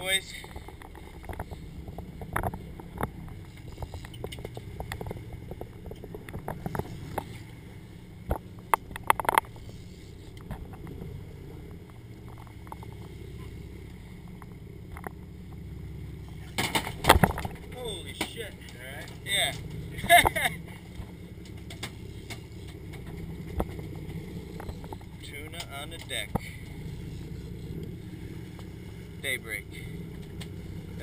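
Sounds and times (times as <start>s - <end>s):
boat engine rumbling: 0.0s - 31.0s
sharp clicks and knocks: 0.4s - 7.4s, 8.2s - 9.7s, 11.8s - 13.1s, 14.3s - 26.8s.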